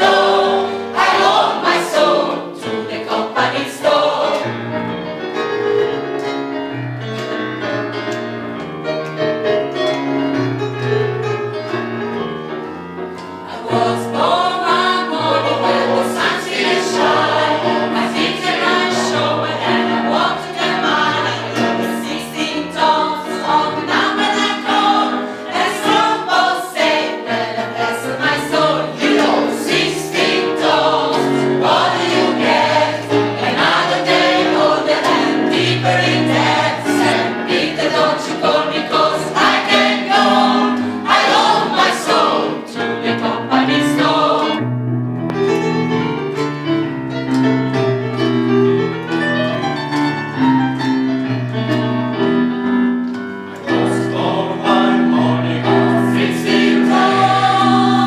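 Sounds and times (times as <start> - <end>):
gospel choir singing: 0.0 - 5.5, 13.3 - 44.7, 53.5 - 58.0.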